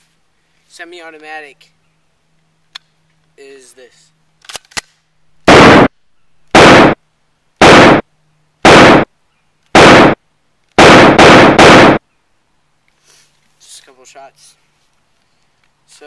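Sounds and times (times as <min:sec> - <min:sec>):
shotgun blasts: 0:05.5 - 0:05.9, 0:06.5 - 0:07.0, 0:07.6 - 0:08.0, 0:08.6 - 0:09.1, 0:09.8 - 0:10.2, 0:10.8 - 0:12.0.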